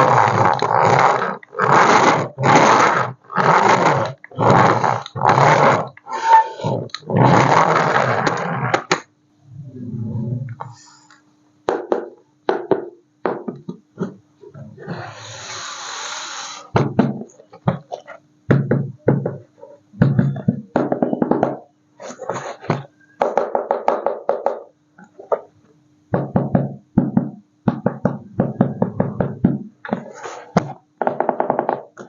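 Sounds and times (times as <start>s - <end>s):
steady low tone: 9.3s - 11.2s
hissing burst: 14.9s - 16.8s.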